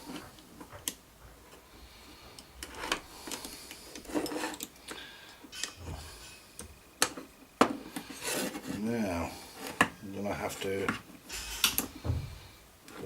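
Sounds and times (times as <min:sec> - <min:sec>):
parts scraping: 0:00.0 - 0:13.0
small parts clicking and tapping: 0:10.5 - 0:12.0.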